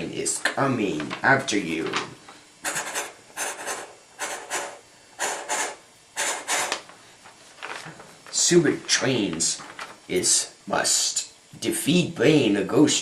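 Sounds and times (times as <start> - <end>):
child making train chugging noise: 2.6 - 6.8.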